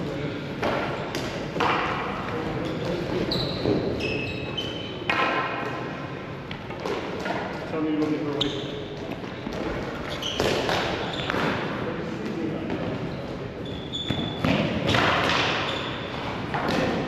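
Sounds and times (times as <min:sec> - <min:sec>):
hockey sticks and ball knocking: 0:00.6 - 0:03.0, 0:05.0 - 0:05.8, 0:06.5 - 0:11.8, 0:14.0 - 0:17.0.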